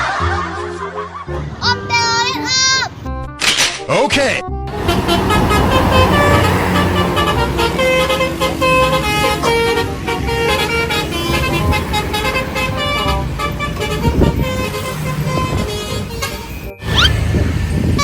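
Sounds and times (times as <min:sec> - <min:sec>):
multi-tone musical bus horn: 0:04.7 - 0:18.0
vehicle engine running: 0:04.7 - 0:18.0.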